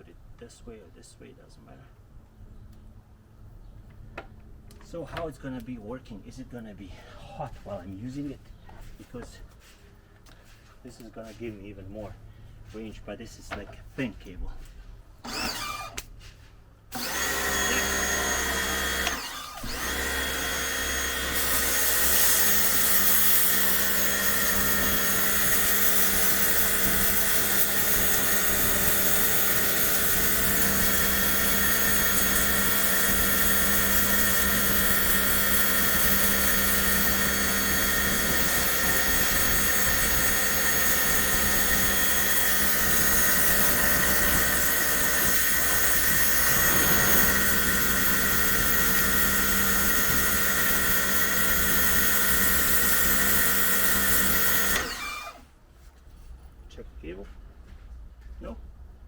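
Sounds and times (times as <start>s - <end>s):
pressure washer motor and pump: 15.2s - 16.1s, 16.9s - 55.4s.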